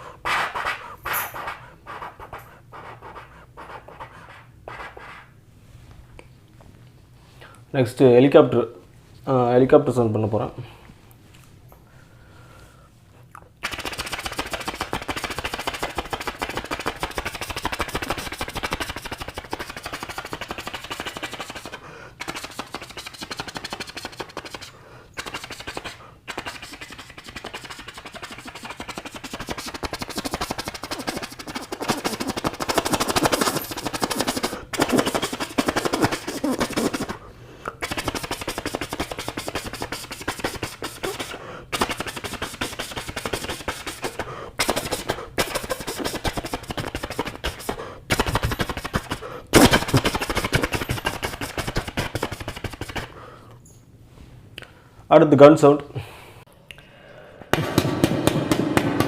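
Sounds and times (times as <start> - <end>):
breaths: 7.2 - 7.7, 11.8 - 13.3, 21.8 - 22.2, 24.8 - 25.2, 37.2 - 37.8, 41.3 - 41.7, 44.2 - 44.6, 53.1 - 53.7, 54.6 - 55.1, 55.9 - 57.6
person imitating helicopter by mouth: 13.6 - 37.2, 37.8 - 53.1.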